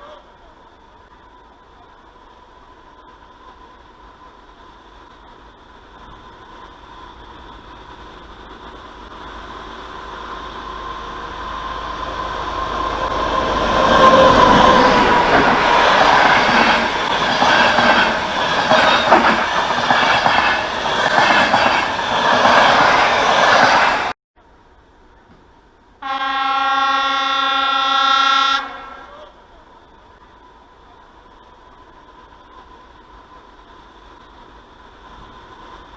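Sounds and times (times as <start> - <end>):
train passing: 0.0 - 35.9
train wheels clattering over rail joints: 14.2 - 24.1
train horn blast: 26.0 - 29.4.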